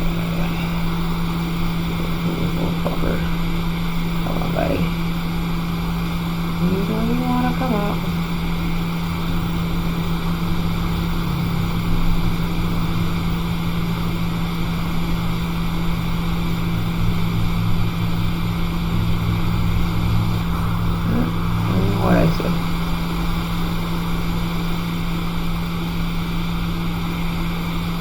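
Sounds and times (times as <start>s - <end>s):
hot air blower rushing: 0.0s - 6.8s
steady low hum: 0.0s - 28.0s.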